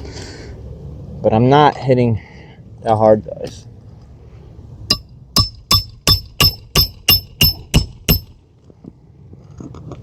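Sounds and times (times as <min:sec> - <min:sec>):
hammer striking a nail: 0:04.9 - 0:08.4.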